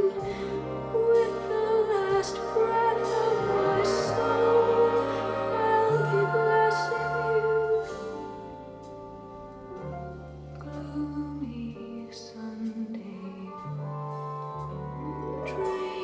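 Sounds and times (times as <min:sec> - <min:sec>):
person singing: 0:00.0 - 0:08.5
steady bass notes: 0:00.0 - 0:16.0.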